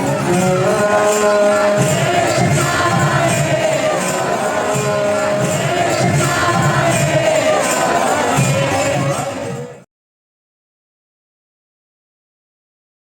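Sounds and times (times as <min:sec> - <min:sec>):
drum beat: 0:00.0 - 0:09.6
jingling hand cymbals: 0:00.0 - 0:09.8
voices singing held notes: 0:00.0 - 0:09.8.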